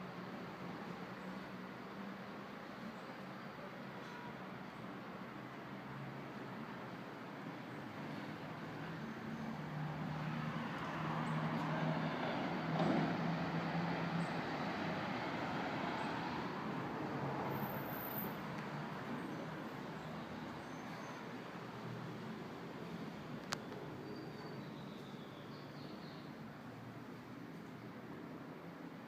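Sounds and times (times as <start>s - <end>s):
passing vehicle engine hum: 8.0s - 24.0s.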